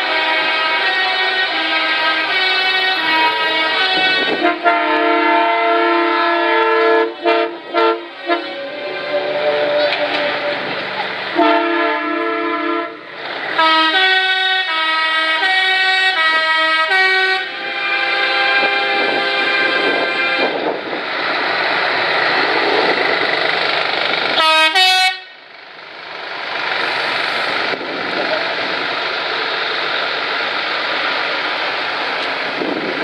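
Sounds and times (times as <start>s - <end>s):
truck air horns: 0.0s - 20.9s, 24.3s - 25.4s
passing traffic rumble: 0.0s - 33.0s.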